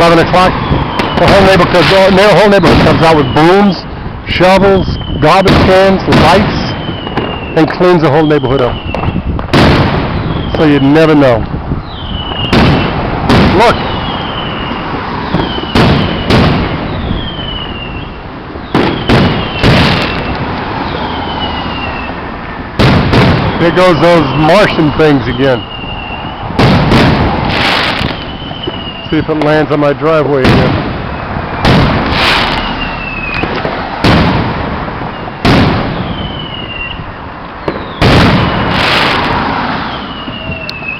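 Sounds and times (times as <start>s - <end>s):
fireworks bangs: 0.0s - 40.9s
falling firework whistles: 0.5s - 3.8s, 4.7s - 11.0s, 11.8s - 29.5s, 31.0s - 40.9s.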